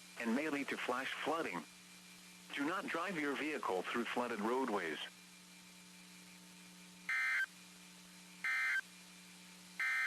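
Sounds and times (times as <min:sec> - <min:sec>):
faint steady hum: 0:00.0 - 0:10.0
screeching digital data tones: 0:07.1 - 0:07.5, 0:08.4 - 0:08.8, 0:09.8 - 0:10.0.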